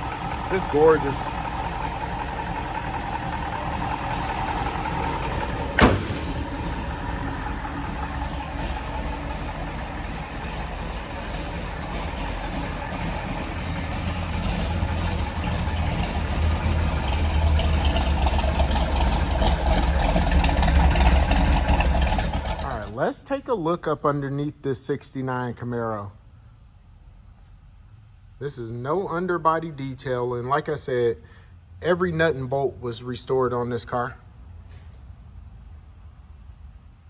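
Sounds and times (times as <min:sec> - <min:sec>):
car engine idling: 0:00.0 - 0:23.2.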